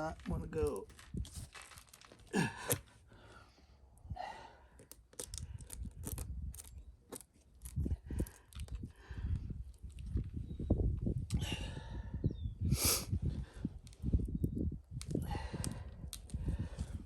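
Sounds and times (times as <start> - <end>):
heavy breaths of effort: 2.3 - 4.9, 11.4 - 13.8, 15.2 - 17.0.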